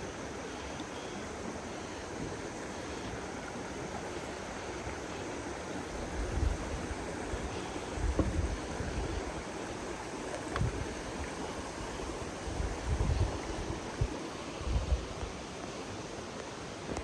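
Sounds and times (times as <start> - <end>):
wind buffeting microphone: 5.8 - 15.4.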